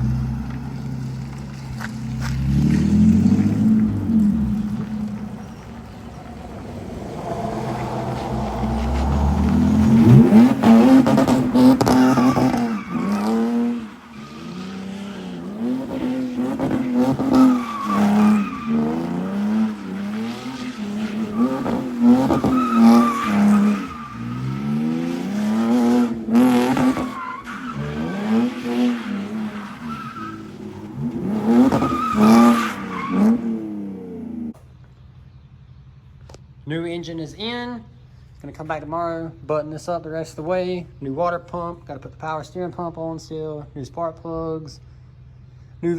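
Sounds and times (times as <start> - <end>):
tyres squealing: 0.0 - 34.5
car engine revving: 0.0 - 34.6.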